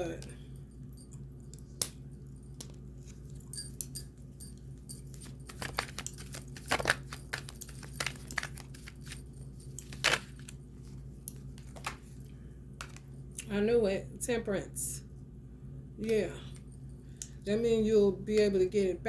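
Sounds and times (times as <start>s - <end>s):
low steady hum: 0.0s - 19.0s
cards being shuffled: 5.4s - 9.1s, 9.8s - 10.6s.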